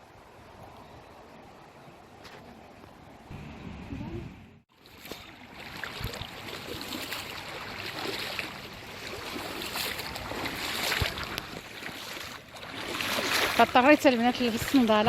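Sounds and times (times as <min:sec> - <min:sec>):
water lapping and sloshing: 0:04.7 - 0:15.0.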